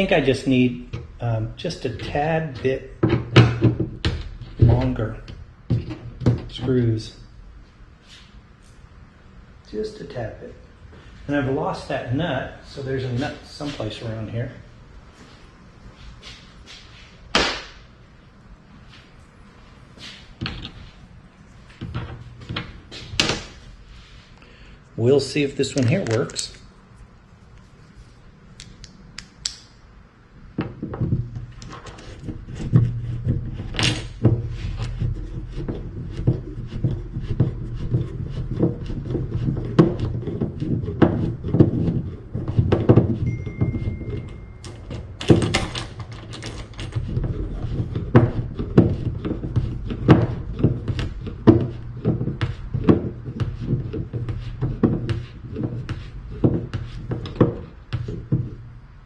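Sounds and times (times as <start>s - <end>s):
low rumble of hull handling: 0.0s - 7.3s, 30.5s - 59.0s
tools knocking and clicking on wood: 3.0s - 6.7s, 30.6s - 58.6s.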